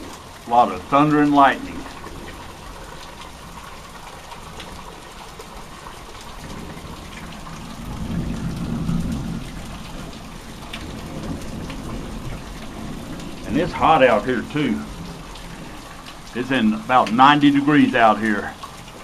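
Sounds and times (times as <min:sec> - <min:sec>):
steady rain: 0:00.0 - 0:19.0
thunder rumbling: 0:06.2 - 0:19.0.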